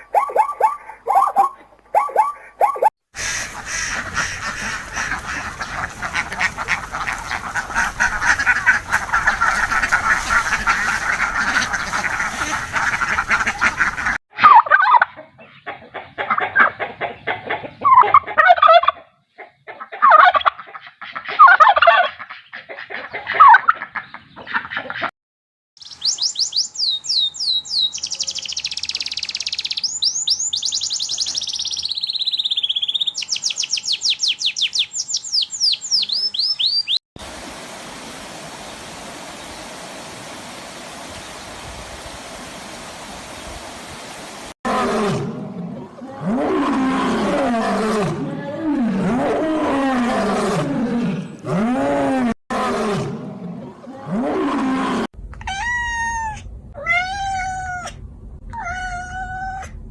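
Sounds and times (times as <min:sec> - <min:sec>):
loud bird calls: 0:00.0 - 0:14.1
flock of birds chorus: 0:03.2 - 0:14.2.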